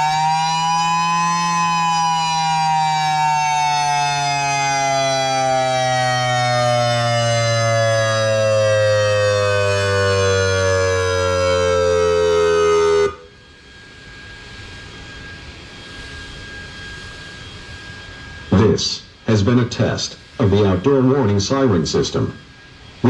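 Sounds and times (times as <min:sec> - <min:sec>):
warning siren sliding down: 0:00.0 - 0:23.0
faint steady high tone: 0:12.9 - 0:23.0.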